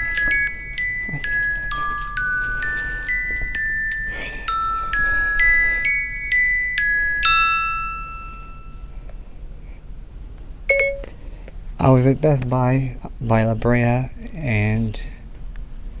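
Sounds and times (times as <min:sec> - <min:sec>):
glockenspiel ringtone melody: 0:00.0 - 0:09.0, 0:10.7 - 0:11.1.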